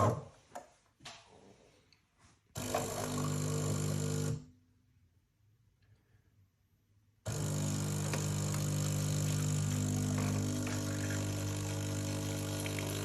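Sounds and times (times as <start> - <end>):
coffee machine pump humming: 2.6 - 4.5, 7.3 - 13.0.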